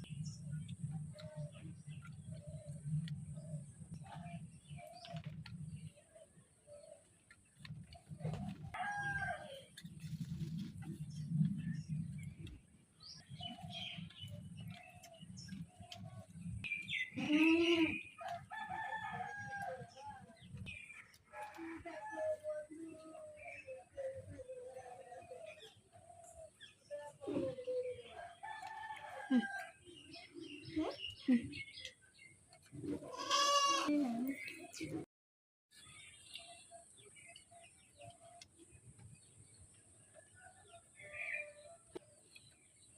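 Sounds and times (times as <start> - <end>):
birds chirping: 10.5 - 21.4.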